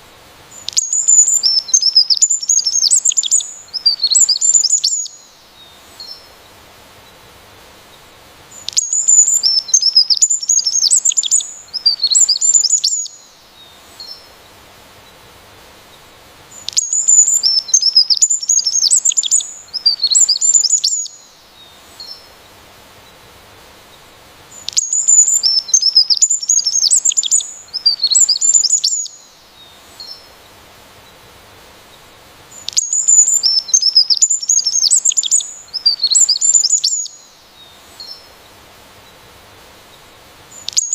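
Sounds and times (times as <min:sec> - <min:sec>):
songbird chirps and trills: 0:00.5 - 0:07.2, 0:07.9 - 0:15.2, 0:15.9 - 0:23.2, 0:23.9 - 0:31.3, 0:31.9 - 0:39.3, 0:39.9 - 0:40.9.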